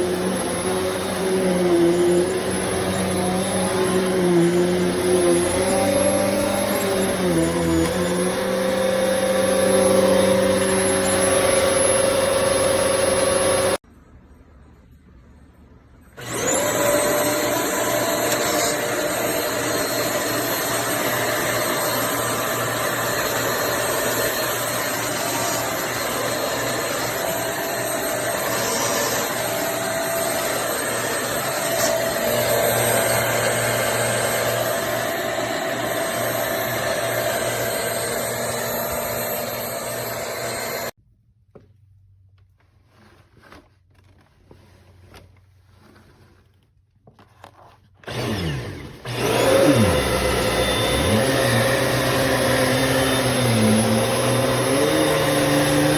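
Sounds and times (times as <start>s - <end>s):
vacuum cleaner running: 0.0s - 13.8s, 16.2s - 41.0s, 48.0s - 55.9s.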